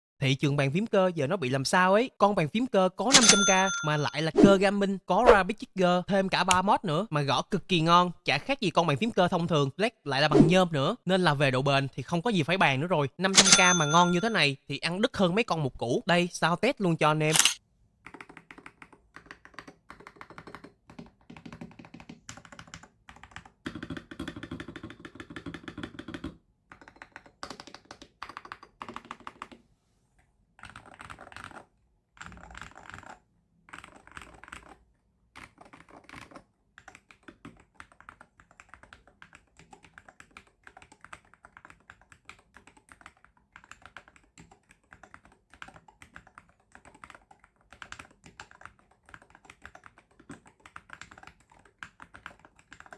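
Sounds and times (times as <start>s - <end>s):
keyboard keystroke clacks: 13.3s - 14.4s, 17.2s - 29.6s, 35.4s - 52.9s.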